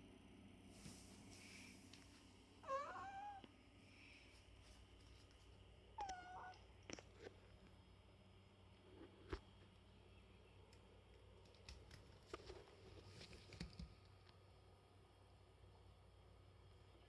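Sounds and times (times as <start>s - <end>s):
cat meowing: 2.6s - 3.5s, 6.0s - 6.6s.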